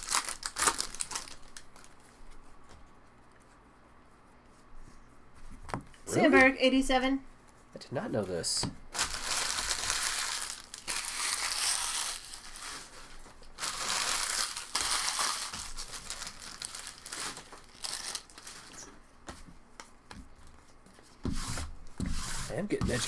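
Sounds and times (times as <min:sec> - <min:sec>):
plastic wrappers crinkling: 0:00.0 - 0:02.4, 0:08.2 - 0:19.0.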